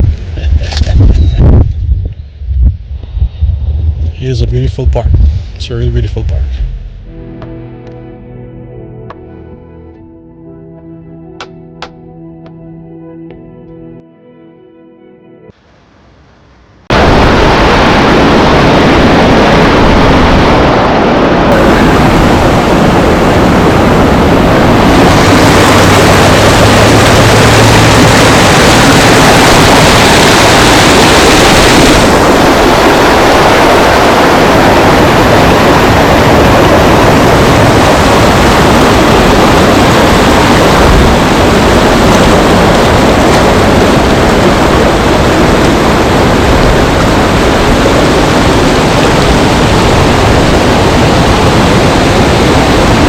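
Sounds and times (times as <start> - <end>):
waterfall roaring: 16.9 - 53.0.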